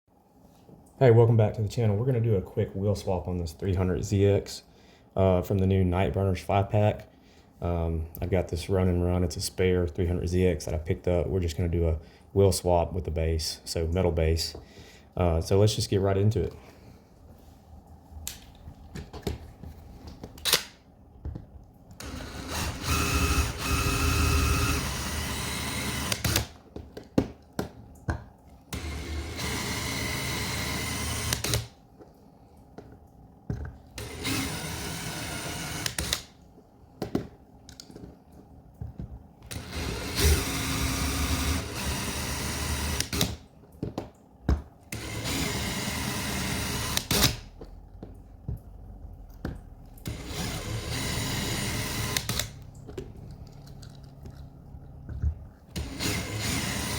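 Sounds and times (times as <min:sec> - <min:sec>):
electric drill drilling rivets: 0:22.0 - 0:26.6, 0:28.7 - 0:31.7, 0:34.0 - 0:36.3, 0:39.5 - 0:43.4, 0:44.9 - 0:47.4, 0:50.0 - 0:52.6, 0:55.7 - 0:56.9
clicks and handling noises: 0:36.0 - 0:39.6.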